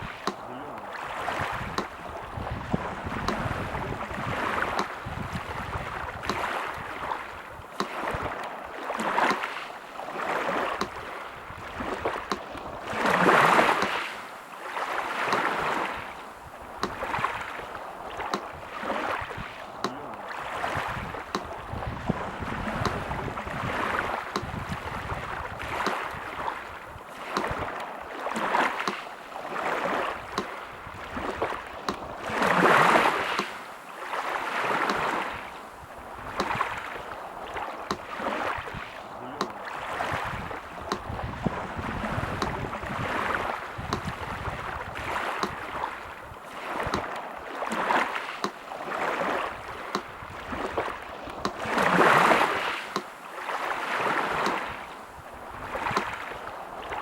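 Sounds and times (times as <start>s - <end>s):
sea surf washing: 0.0s - 57.0s
waves breaking: 0.0s - 57.0s
metronome ticking: 16.8s - 17.0s, 24.3s - 24.6s, 40.9s - 41.1s.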